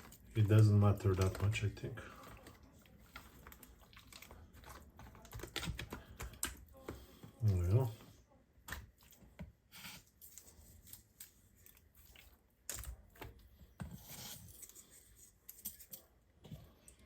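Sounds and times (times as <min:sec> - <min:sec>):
kitchen handling scrapes and rustles: 0:13.4 - 0:16.2.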